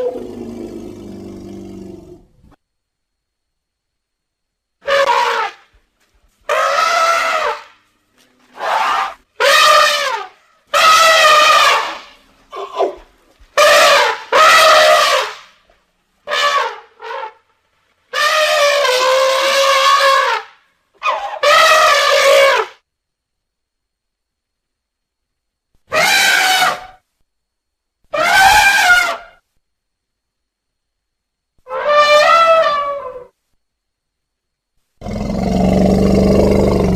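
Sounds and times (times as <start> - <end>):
elephant trumpeting: 4.8 - 5.6, 6.5 - 7.8, 8.6 - 13.0, 13.6 - 15.4, 18.1 - 22.8, 25.9 - 26.9, 28.1 - 29.3, 31.7 - 33.3.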